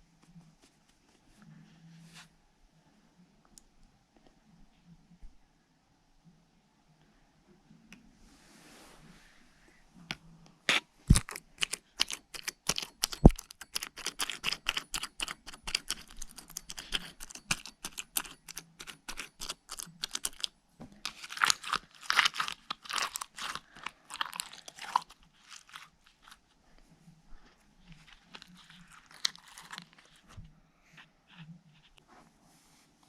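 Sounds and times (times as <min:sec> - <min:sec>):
slime crackling and popping: 0:21.1 - 0:25.9.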